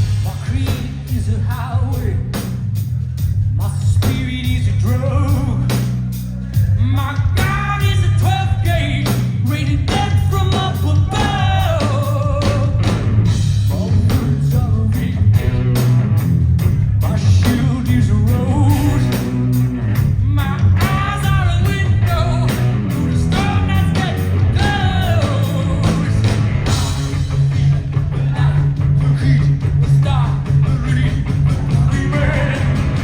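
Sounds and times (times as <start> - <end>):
man singing lead vocal: 0.0 - 2.4, 3.5 - 5.9, 6.6 - 13.0, 13.6 - 15.8, 17.0 - 26.8, 27.4 - 33.0
live rock band playing: 0.0 - 33.0.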